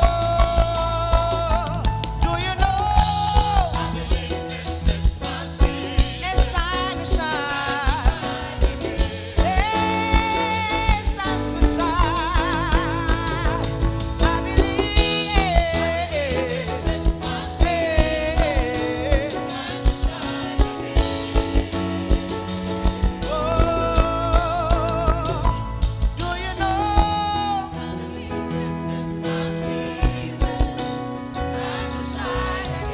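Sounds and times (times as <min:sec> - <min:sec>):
bass: 0:00.0 - 0:32.9
solo singer with vibrato: 0:00.0 - 0:32.9
steady drum beat: 0:00.0 - 0:32.9.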